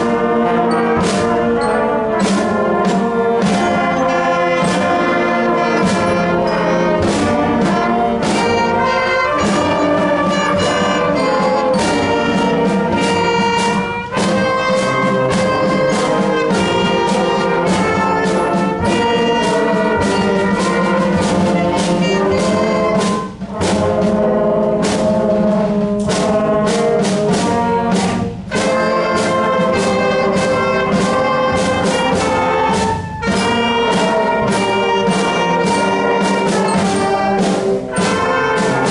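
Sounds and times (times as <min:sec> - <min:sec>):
brass melody: 0:00.0 - 0:38.9
concert band playing: 0:00.0 - 0:38.9
drum hits: 0:00.0 - 0:38.9.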